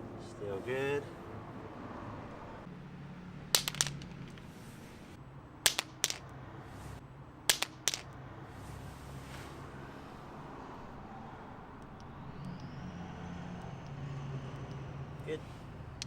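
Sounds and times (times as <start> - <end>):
metal flashlight dropping on hard surface: 3.5 - 4.4, 5.6 - 6.2, 7.5 - 8.1.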